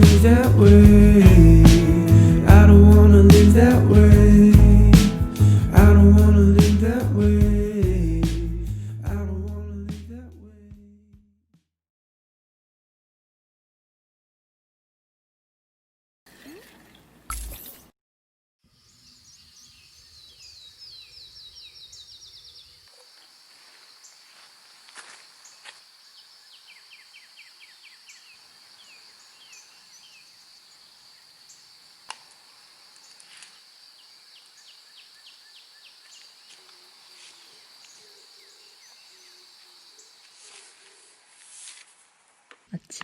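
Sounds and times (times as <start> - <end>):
birds chirping: 18.8 - 41.2.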